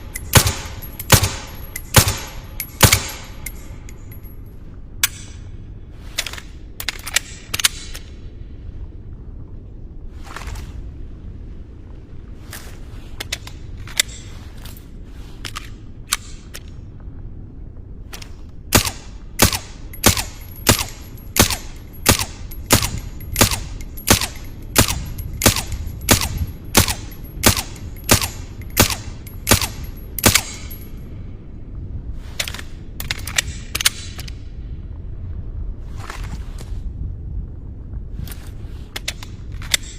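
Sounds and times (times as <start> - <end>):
suppressed pistol shots: 0.2 - 3.6, 18.7 - 30.7.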